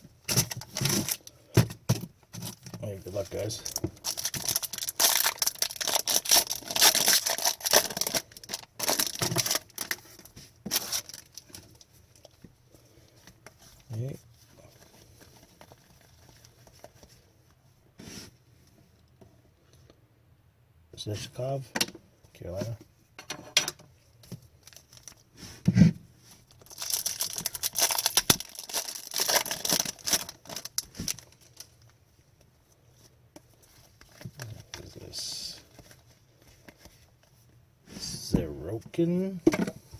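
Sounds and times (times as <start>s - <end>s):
foil wrappers tearing and crinkling: 0.3s - 1.4s, 3.3s - 11.8s, 24.6s - 25.2s, 26.5s - 31.8s.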